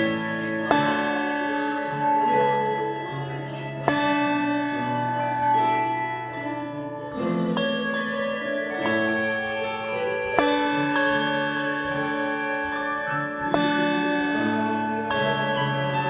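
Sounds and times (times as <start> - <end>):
handbell choir ringing chords: 0.0 - 16.0.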